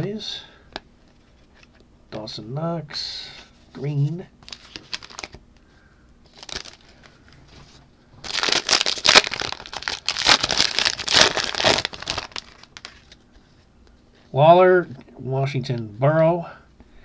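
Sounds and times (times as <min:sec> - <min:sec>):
foil wrapper crinkling: 0:04.4 - 0:05.4, 0:06.3 - 0:07.1, 0:08.2 - 0:13.2.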